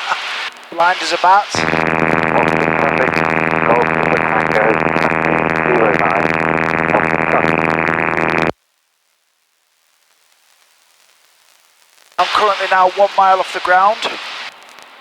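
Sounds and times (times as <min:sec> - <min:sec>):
faint voices: 0:00.0 - 0:08.5.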